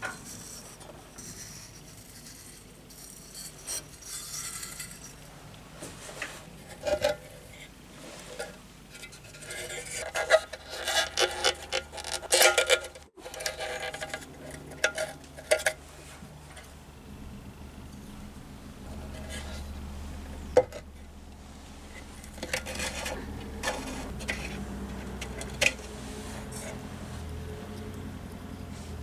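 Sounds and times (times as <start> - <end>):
scraping on sheet metal: 8.1 - 16.7, 21.9 - 27.4.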